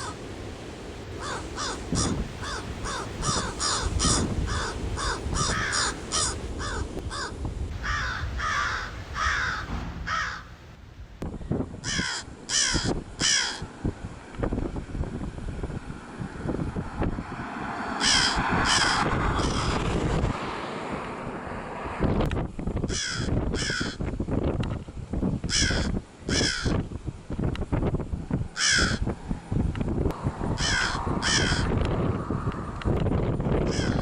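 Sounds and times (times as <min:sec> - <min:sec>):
crow cawing: 0:00.0 - 0:00.2, 0:01.2 - 0:10.6, 0:11.8 - 0:13.7, 0:18.0 - 0:19.8, 0:22.9 - 0:24.0, 0:25.5 - 0:26.8, 0:28.6 - 0:29.0, 0:30.5 - 0:32.4, 0:33.7 - 0:34.0
low background rumble: 0:24.5 - 0:34.0.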